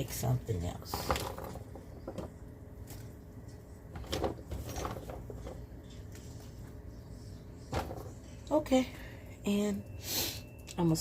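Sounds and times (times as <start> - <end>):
low steady hum: 0.0 - 11.0
kitchen handling clicks and rustles: 3.9 - 5.6.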